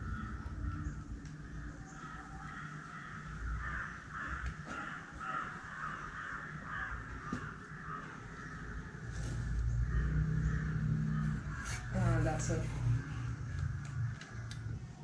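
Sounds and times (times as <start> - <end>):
crows cawing: 0.0 - 14.5.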